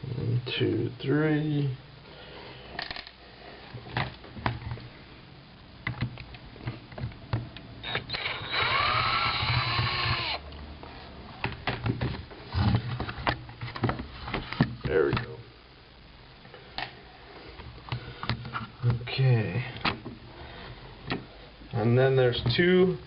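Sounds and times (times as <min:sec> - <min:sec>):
power drill whining: 0:07.8 - 0:10.4.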